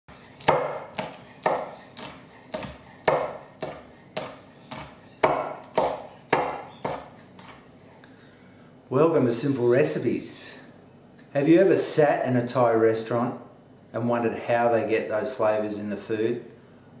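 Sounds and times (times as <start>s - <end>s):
knife chopping on cutting board: 0.2s - 7.6s.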